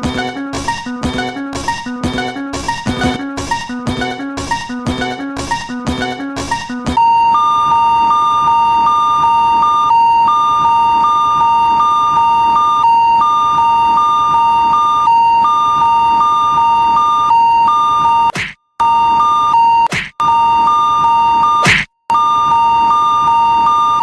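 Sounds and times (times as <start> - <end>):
railroad crossing warning alarm: 7.0 - 24.0.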